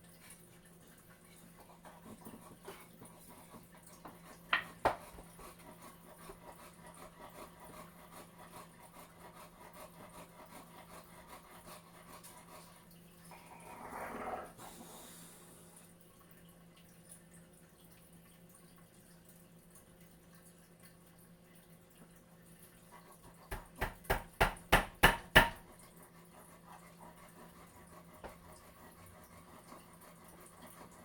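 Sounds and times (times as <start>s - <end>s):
sharp knocks on wood: 23.5s - 25.6s.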